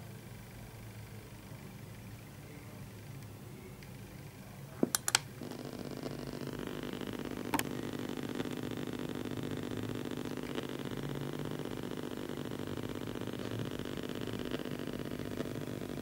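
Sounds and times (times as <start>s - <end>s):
steady buzzing hum: 0.0s - 16.0s
sharp clicks: 4.9s - 5.3s, 7.4s - 7.8s.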